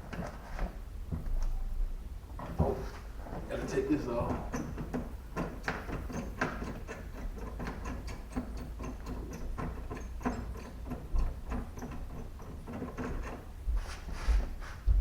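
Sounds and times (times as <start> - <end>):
hand tools clicking on car trim: 4.3 - 13.6.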